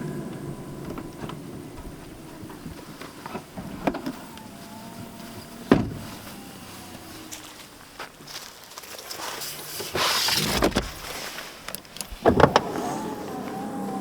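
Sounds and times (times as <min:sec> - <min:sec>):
vehicle engine idling: 0:00.0 - 0:08.8, 0:12.1 - 0:14.0
sharp loud thump: 0:05.7 - 0:06.2.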